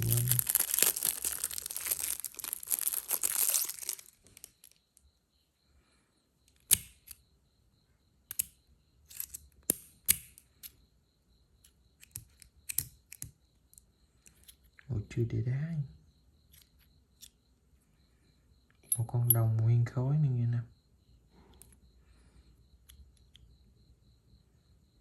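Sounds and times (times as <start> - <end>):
packaging crinkling: 0.0 - 4.8.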